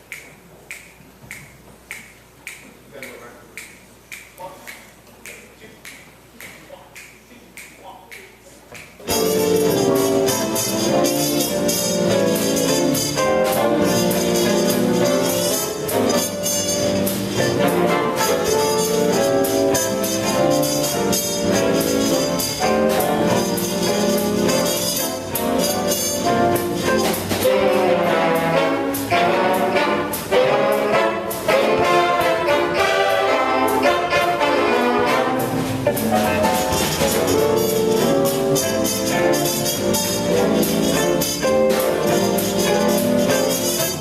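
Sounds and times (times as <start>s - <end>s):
jazz big band playing: 9.0s - 44.0s.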